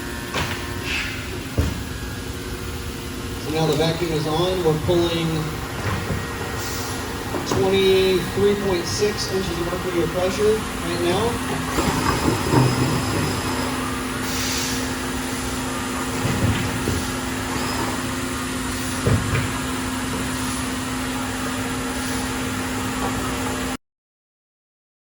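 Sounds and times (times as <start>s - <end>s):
vacuum system humming: 0.0s - 23.8s
short hiss of air: 0.8s - 1.3s, 6.6s - 7.1s, 14.2s - 14.9s.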